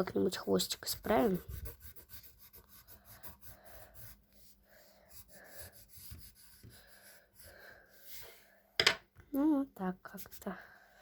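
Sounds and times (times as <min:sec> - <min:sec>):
pencil scratching on paper: 0:00.0 - 0:08.3
soft breathing: 0:02.8 - 0:08.8.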